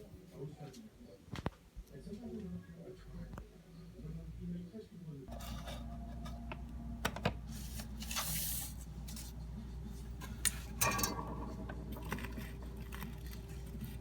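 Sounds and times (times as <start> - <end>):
steady low hum: 5.3 - 14.0.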